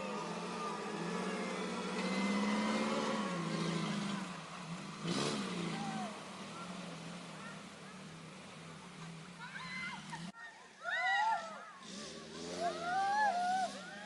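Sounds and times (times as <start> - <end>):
engine running under load: 0.0 - 9.5.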